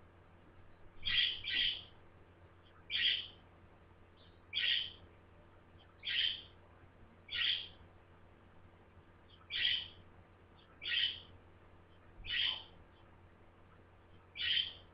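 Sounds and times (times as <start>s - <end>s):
budgerigar calling: 1.0s - 1.9s, 2.9s - 3.3s, 4.5s - 5.0s, 6.0s - 6.5s, 7.3s - 7.7s, 9.5s - 10.0s, 10.8s - 11.3s, 12.2s - 12.7s, 14.4s - 14.8s.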